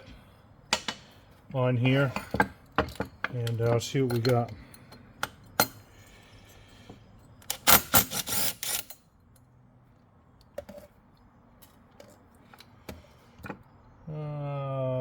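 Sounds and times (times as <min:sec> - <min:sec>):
small metal parts clinking: 0:01.9 - 0:05.8.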